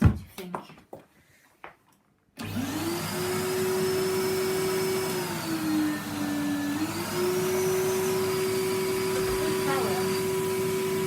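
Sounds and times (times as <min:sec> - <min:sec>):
vacuum cleaner motor whine: 0:02.4 - 0:11.0.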